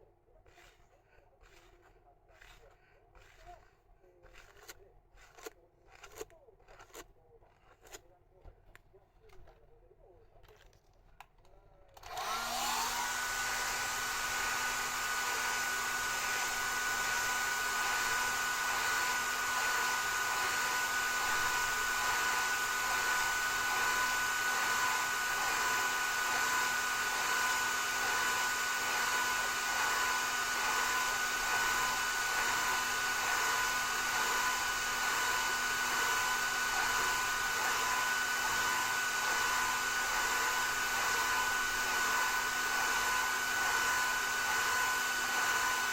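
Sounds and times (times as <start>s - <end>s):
hair dryer whirring: 12.0s - 45.9s.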